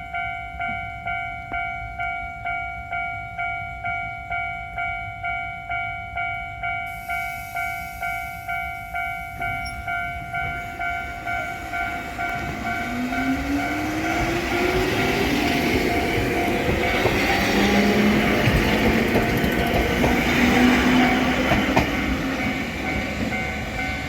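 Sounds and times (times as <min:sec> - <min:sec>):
level-crossing warning bell ringing: 0:00.0 - 0:24.0
electric train running: 0:07.3 - 0:24.0.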